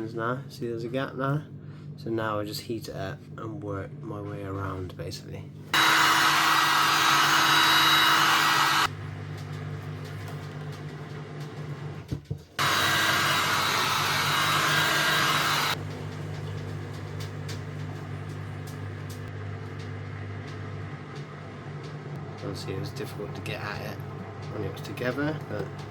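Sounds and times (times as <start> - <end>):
heat gun blowing: 5.8 - 8.9, 12.6 - 15.8.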